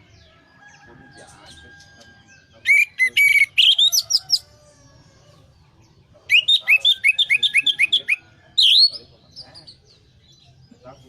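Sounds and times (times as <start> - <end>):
thrush singing whistled notes: 2.6 - 4.4, 6.3 - 9.0.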